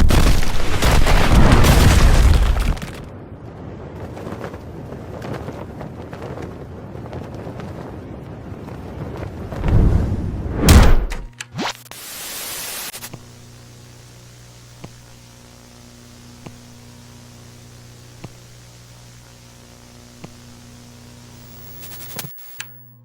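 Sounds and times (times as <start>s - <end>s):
electrical hum: 0.0s - 23.0s
static hiss: 11.6s - 23.0s
loud burst of hiss: 11.9s - 13.1s
faint ticks: 18.1s - 18.6s.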